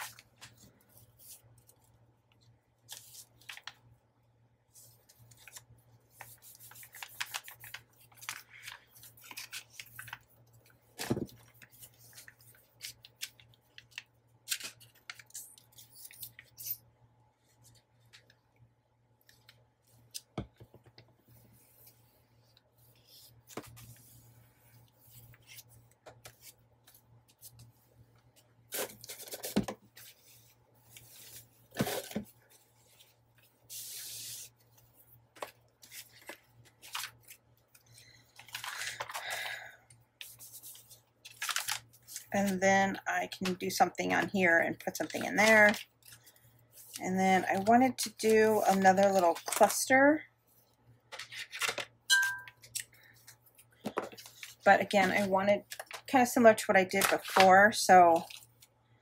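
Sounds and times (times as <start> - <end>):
paper rustling and crinkling: 2.8 - 3.8, 4.8 - 16.6, 28.7 - 39.5, 40.2 - 42.6, 44.8 - 49.9.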